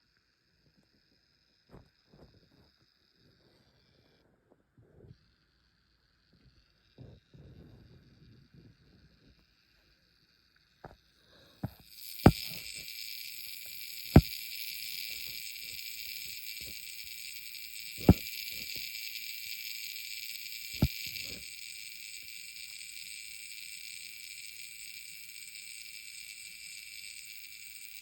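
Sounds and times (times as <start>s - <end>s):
steady high hiss: 10.1s - 28.0s.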